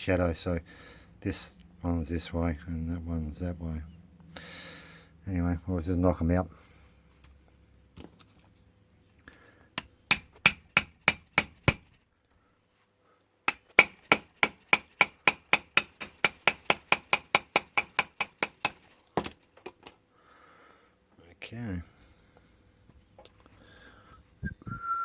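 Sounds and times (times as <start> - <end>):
hammer tapping metal punch: 9.8 - 11.9, 13.5 - 20.0.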